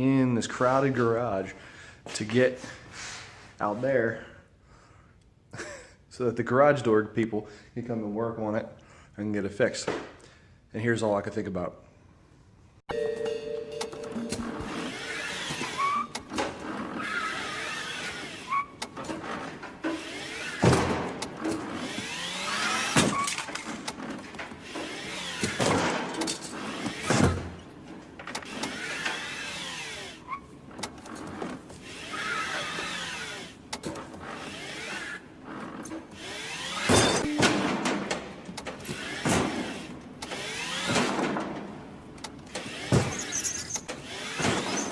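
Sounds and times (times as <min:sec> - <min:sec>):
electric motor whining: 0:14.4 - 0:18.7, 0:21.6 - 0:23.0, 0:28.4 - 0:30.4, 0:31.8 - 0:37.3.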